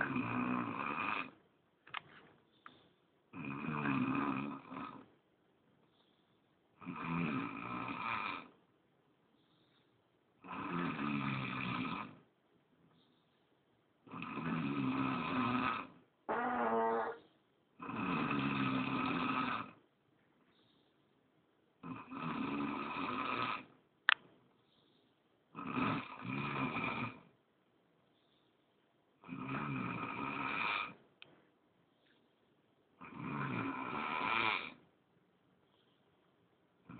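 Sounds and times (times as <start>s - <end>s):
person snoring: 0.0s - 1.3s, 3.4s - 5.0s, 6.8s - 8.5s, 10.4s - 12.2s, 14.1s - 17.2s, 17.8s - 19.8s, 21.8s - 23.7s, 25.6s - 27.2s, 29.2s - 31.0s, 33.0s - 34.8s.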